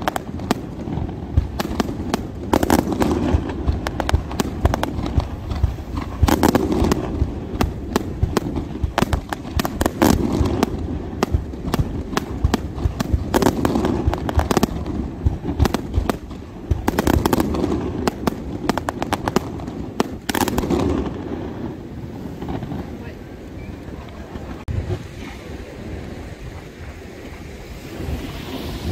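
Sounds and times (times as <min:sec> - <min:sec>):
fireworks booming salvos: 0:00.0 - 0:26.2
fireworks bangs and crackling: 0:00.0 - 0:28.9.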